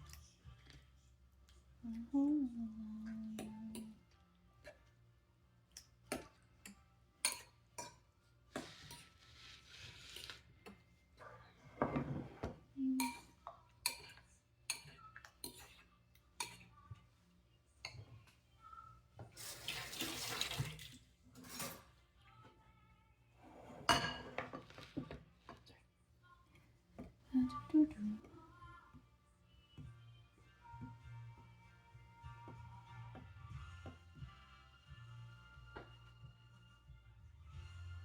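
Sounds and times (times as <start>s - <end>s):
utensils and dishes clinking: 21.3s - 22.0s, 23.6s - 25.2s.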